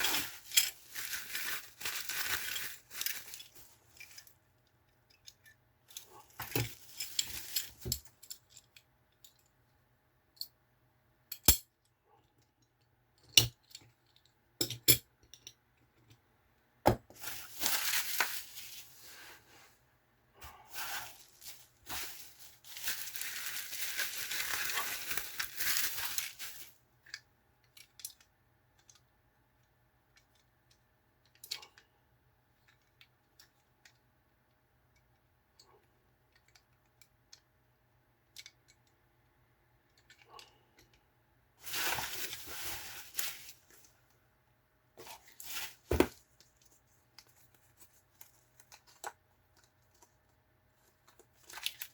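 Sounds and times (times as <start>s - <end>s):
packaging rustling: 0.0s - 4.4s, 17.1s - 19.4s, 20.6s - 26.8s, 41.6s - 44.0s, 45.0s - 51.9s.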